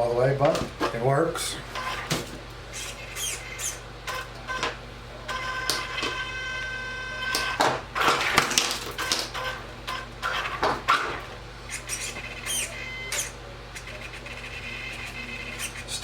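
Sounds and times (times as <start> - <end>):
steering servo buzzing and clicking: 1.7 - 16.0
electric motor whine: 2.7 - 4.2, 8.3 - 16.0.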